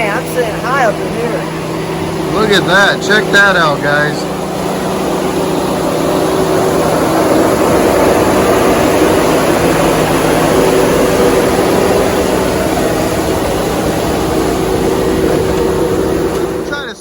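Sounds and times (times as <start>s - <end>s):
pickup engine running: 0.0s - 17.0s.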